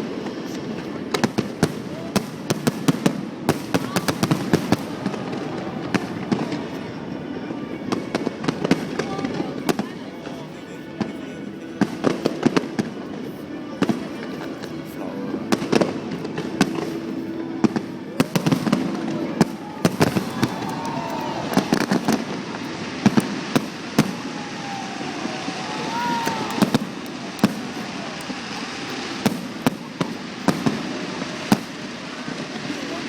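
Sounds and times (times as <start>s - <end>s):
fireworks bangs and cracks: 0.0s - 9.9s, 15.5s - 33.0s
fireworks crackling: 0.0s - 33.0s
fireworks whistling: 15.5s - 33.0s.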